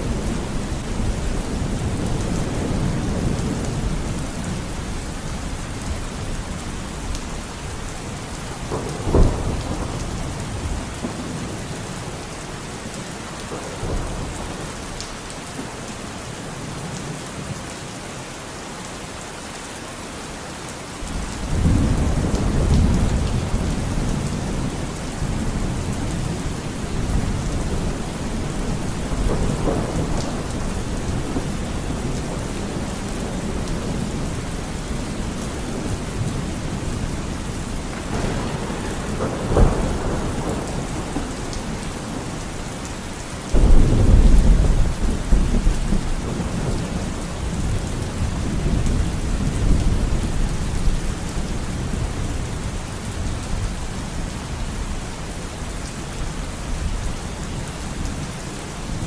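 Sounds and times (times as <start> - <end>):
rolling thunder: 0.0 - 12.2, 21.0 - 53.7
heavy rain: 0.0 - 59.0.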